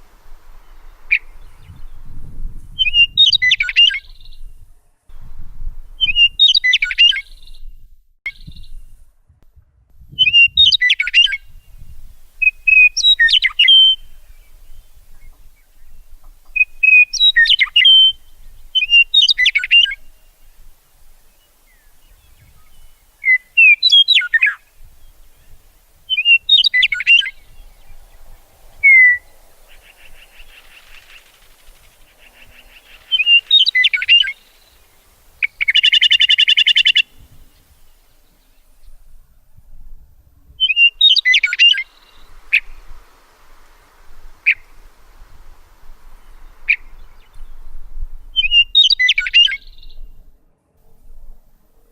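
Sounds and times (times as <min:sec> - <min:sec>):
songbirds chirping and singing: 0:12.4 - 0:39.0
loud buzzing bird trill: 0:26.2 - 0:37.2.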